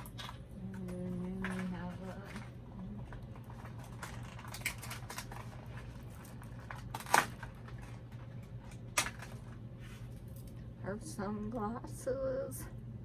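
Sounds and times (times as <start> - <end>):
packaging rustling: 1.2 - 10.4.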